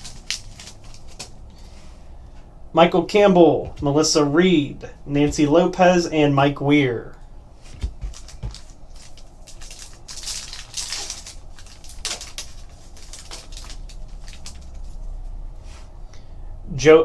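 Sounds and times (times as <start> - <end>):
foil wrapper crinkling and tearing: 0.0 - 1.7, 7.8 - 15.4
cards rustling: 0.0 - 2.2, 7.1 - 15.9.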